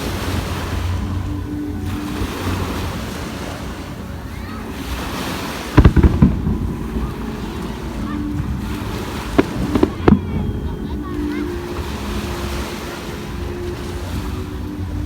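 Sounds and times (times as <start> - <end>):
beach noise: 0.0 - 15.0
wind: 0.0 - 15.0
fireworks bursting: 5.7 - 11.4.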